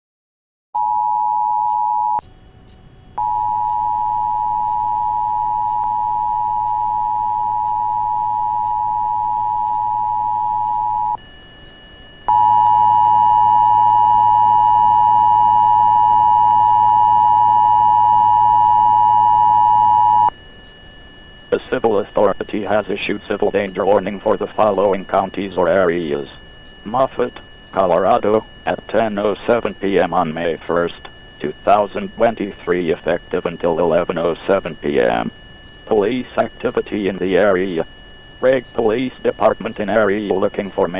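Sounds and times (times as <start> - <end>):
two-tone attention signal: 3.2 - 11.2, 12.2 - 20.3.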